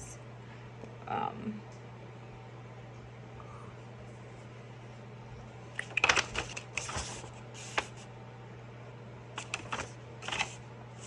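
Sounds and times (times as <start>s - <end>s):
paper and packaging crinkling: 9.4s - 10.6s.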